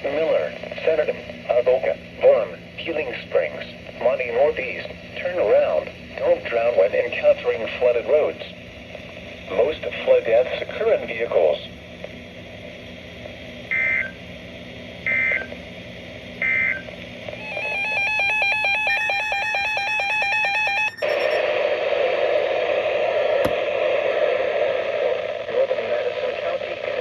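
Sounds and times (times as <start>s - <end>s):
radio static hiss: 0.0s - 27.0s
digital data bursts: 16.4s - 21.4s.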